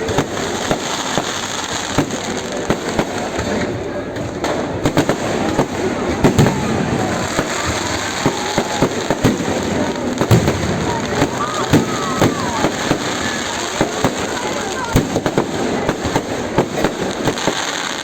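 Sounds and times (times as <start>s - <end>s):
crowd voices: 0.0s - 18.0s
fireworks banging and crackling: 0.0s - 18.0s.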